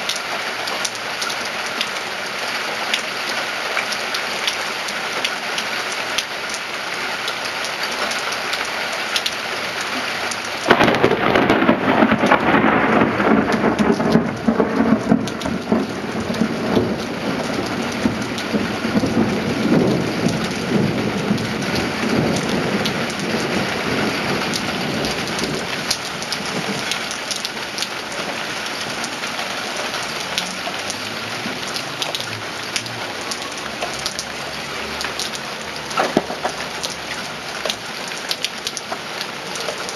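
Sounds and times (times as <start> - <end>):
steady rain falling: 0.0 - 39.9
thunderclap rumbling: 10.6 - 32.9, 35.9 - 36.7.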